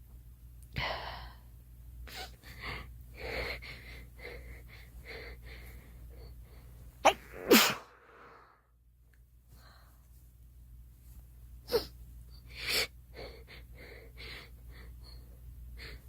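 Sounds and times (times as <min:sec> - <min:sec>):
girl sneezing: 0:07.1 - 0:08.0.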